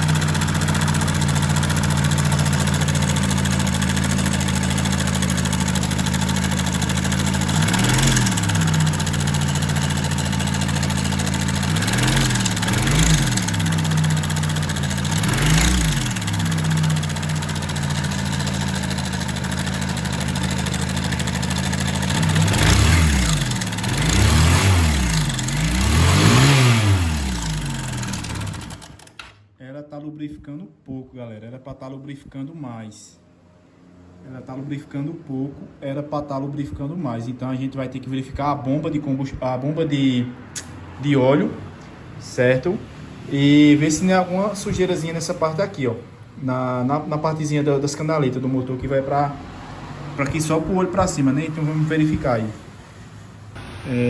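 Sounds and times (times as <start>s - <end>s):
motorcycle engine idling: 0.0s - 29.2s
engine throttle blips: 0.0s - 29.3s, 42.8s - 54.0s.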